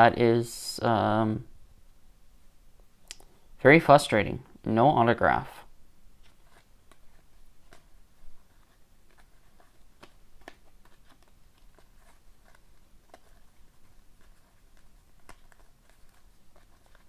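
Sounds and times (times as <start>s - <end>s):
trading cards being handled: 6.2s - 17.0s.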